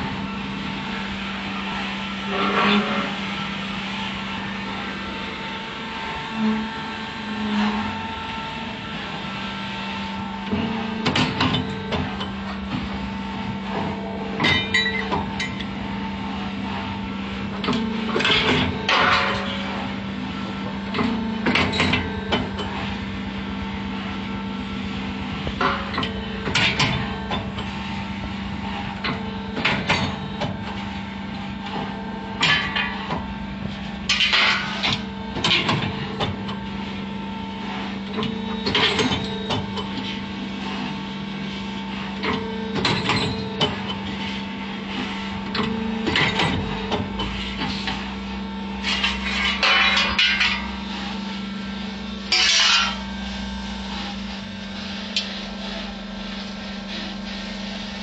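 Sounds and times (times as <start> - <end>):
hydraulic hum: 0.0 - 58.0
steel clattering: 49.0 - 50.8, 52.3 - 53.0.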